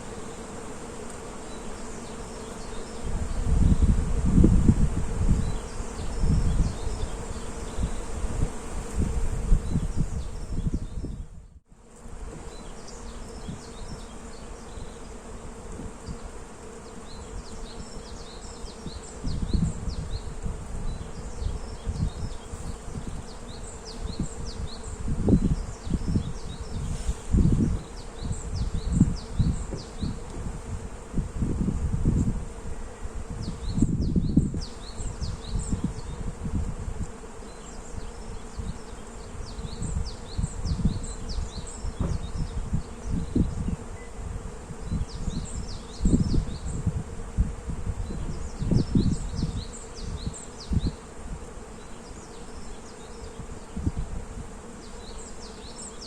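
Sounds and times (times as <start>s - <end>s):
small birds chirping: 0.0s - 3.9s, 5.3s - 11.6s, 12.3s - 30.8s, 32.1s - 36.4s, 37.0s - 47.0s, 48.0s - 56.0s
bees buzzing: 0.0s - 56.0s
wind buffeting microphone: 3.0s - 11.6s, 18.8s - 37.2s, 37.9s - 51.5s, 53.4s - 54.6s.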